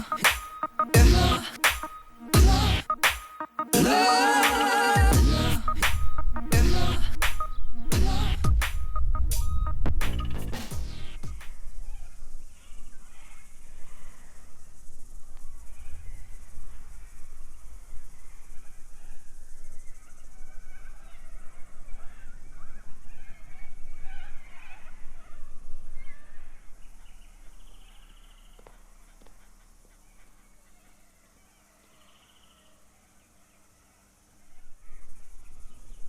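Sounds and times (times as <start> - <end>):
steady high hiss: 0.0 - 24.0
low rumble: 5.1 - 11.4
bird calls and chirps: 7.1 - 36.0.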